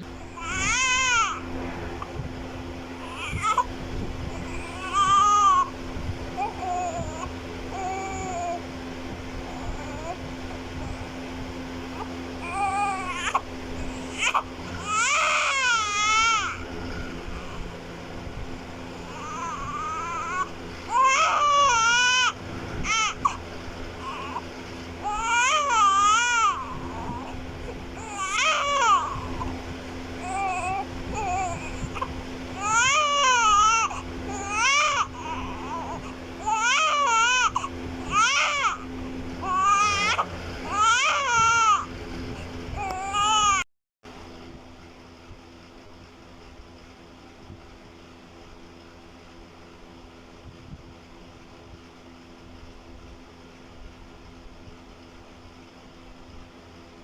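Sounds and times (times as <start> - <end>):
faint steady hum: 0.0 - 57.0
newborn baby crying: 0.3 - 1.4, 3.0 - 3.7, 4.3 - 5.7, 12.0 - 16.6, 19.0 - 23.4, 24.0 - 27.4, 28.0 - 29.5, 30.2 - 38.8, 39.4 - 41.9.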